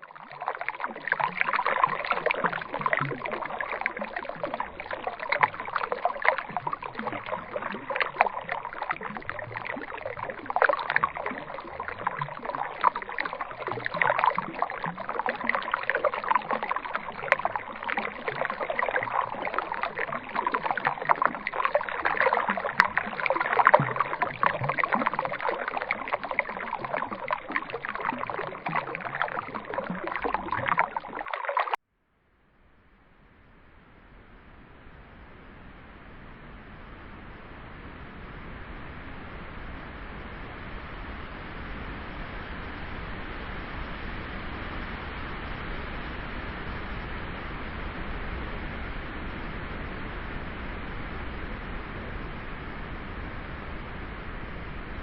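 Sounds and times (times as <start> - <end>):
water sloshing and splashing: 0.0 - 31.8.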